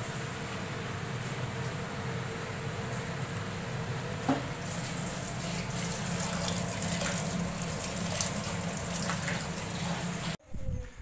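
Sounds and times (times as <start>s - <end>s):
tap water running: 4.1s - 10.4s.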